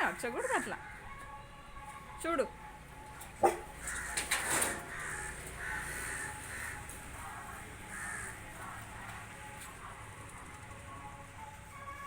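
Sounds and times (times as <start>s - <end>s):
crows cawing: 3.8s - 8.6s.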